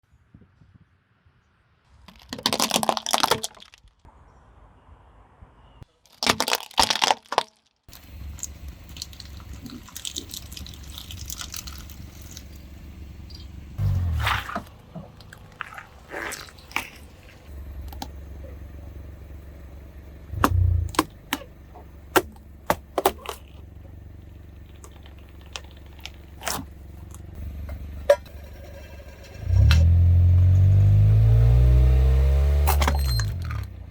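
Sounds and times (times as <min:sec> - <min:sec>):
objects cracking under tyres: 0:01.9 - 0:04.0, 0:06.0 - 0:30.9, 0:32.5 - 0:33.9
car engine running low: 0:07.9 - 0:33.9.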